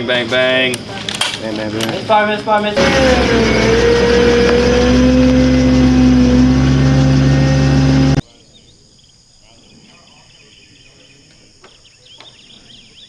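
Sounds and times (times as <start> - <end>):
engine running: 1.6 - 8.2.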